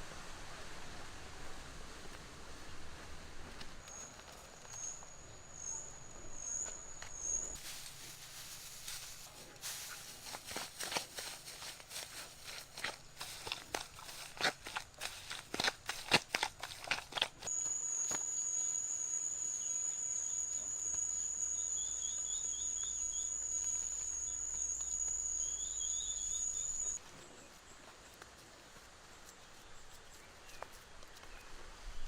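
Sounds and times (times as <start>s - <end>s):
faint chirps: 3.8s - 10.3s, 17.5s - 27.0s
high-pitched insect trill: 17.5s - 27.0s.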